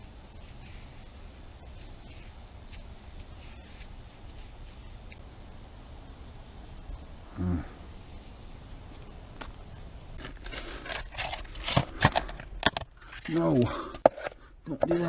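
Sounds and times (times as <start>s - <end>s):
faint high hiss: 0.0s - 10.8s.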